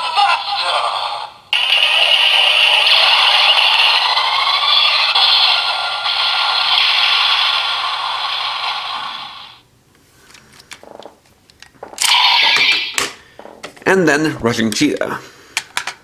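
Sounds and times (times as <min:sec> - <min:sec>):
toy gun electronic blast: 0:01.6 - 0:09.6, 0:12.0 - 0:13.2.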